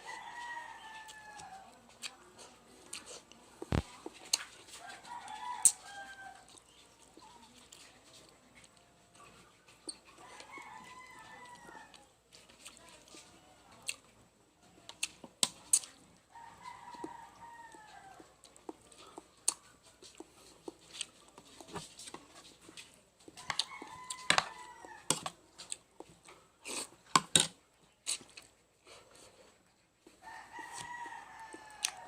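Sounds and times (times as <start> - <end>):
rooster crowing: 23.4 - 25.2, 30.2 - 32.0.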